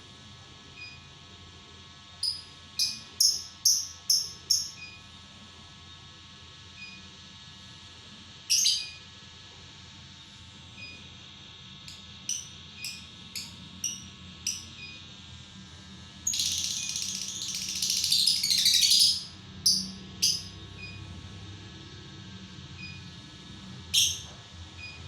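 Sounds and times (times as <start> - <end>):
lovebird chirping and chattering: 2.2 - 4.8, 8.5 - 9.0, 12.3 - 14.7, 16.2 - 20.6, 23.9 - 24.3.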